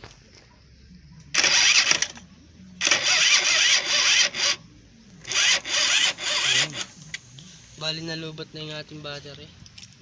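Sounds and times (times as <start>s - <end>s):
starter motor cranking engine: 1.3s - 2.2s, 2.8s - 7.0s.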